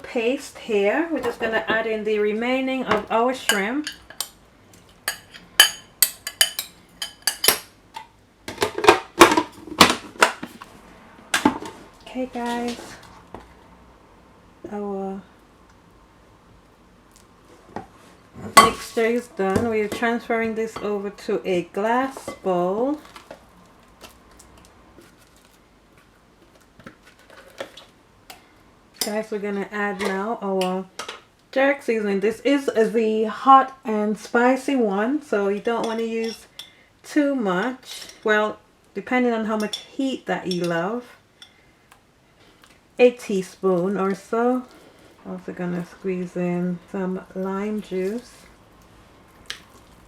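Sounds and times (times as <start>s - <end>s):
utensils clinking on bowl: 3.5s - 4.3s, 5.1s - 7.7s.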